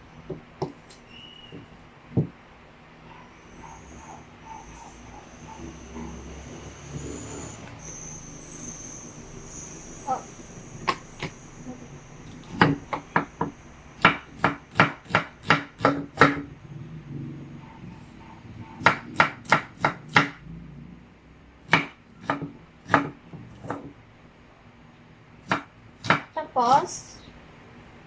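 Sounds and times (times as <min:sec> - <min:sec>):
knife chopping on cutting board: 0:12.4 - 0:16.4, 0:18.8 - 0:20.4, 0:21.7 - 0:23.9, 0:25.4 - 0:26.3.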